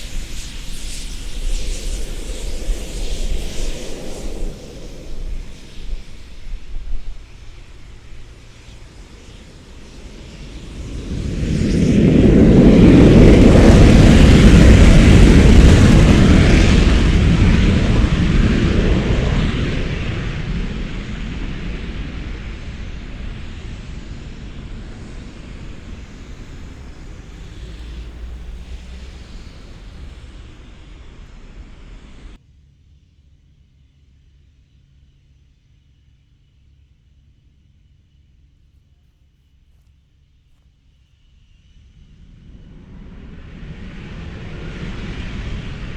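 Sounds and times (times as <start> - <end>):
jet aircraft roar: 0.0 - 32.4, 41.6 - 45.9.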